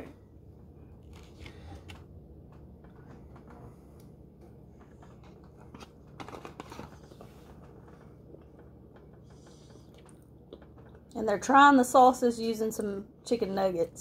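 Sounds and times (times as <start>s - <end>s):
faint eating noises: 1.0s - 11.2s.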